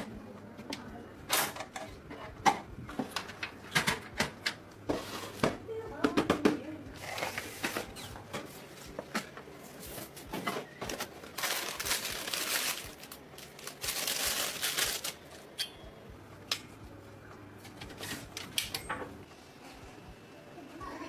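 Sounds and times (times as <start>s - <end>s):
crinkling and rustling: 1.3s - 15.6s, 17.6s - 19.3s.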